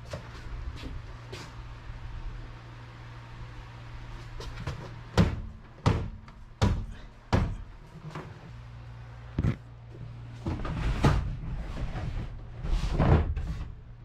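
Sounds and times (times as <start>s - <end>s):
sharp knocks: 5.2s - 7.7s.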